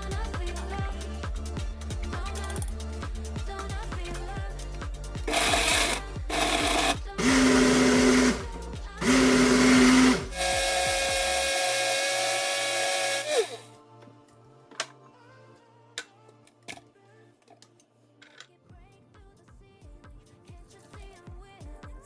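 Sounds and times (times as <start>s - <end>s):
electric blender motor: 5.2s - 13.7s.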